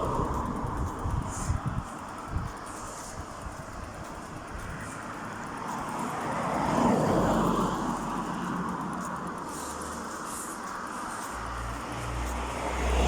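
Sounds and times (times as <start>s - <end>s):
road vehicle passing by: 0.0s - 1.5s, 5.6s - 10.6s, 11.2s - 13.0s.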